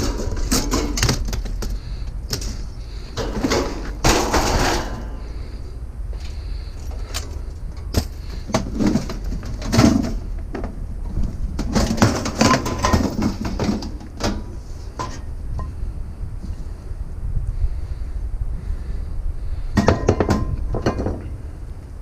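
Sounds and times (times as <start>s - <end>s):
scrap metal clanking: 0.0s - 5.5s, 6.8s - 15.7s
low rumble: 0.0s - 12.1s.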